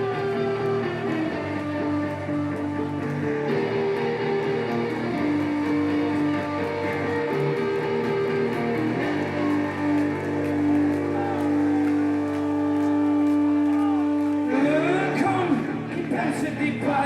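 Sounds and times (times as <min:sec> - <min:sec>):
bass guitar: 0:00.0 - 0:17.0
strummed electric guitars: 0:00.0 - 0:17.0.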